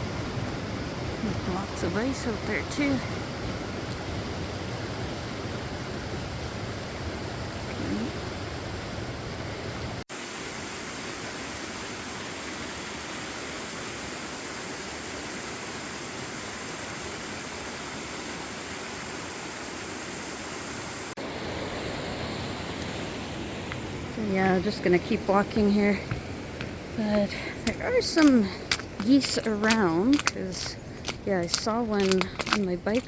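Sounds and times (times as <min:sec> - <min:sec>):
creek rushing water: 0:00.0 - 0:33.0.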